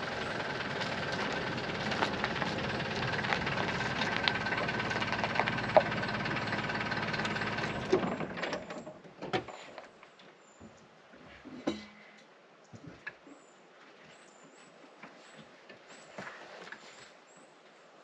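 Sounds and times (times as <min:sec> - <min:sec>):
engine running: 0:00.0 - 0:08.9.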